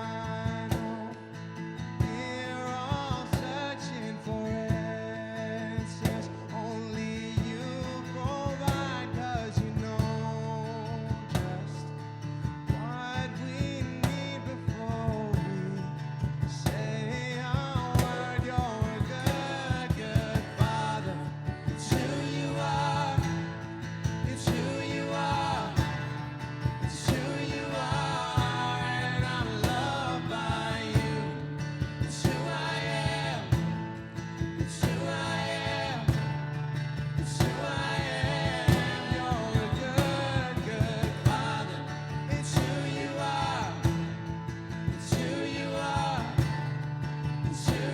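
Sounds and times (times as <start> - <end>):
guitar: 0.0 - 47.9
steady beat: 21.6 - 44.4.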